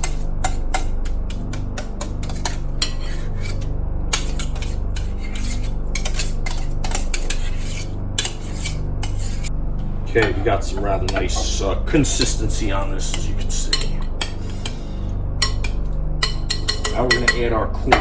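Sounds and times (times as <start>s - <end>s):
steady low hum: 0.0s - 18.0s
utensil scraping a mixing bowl: 0.0s - 18.0s.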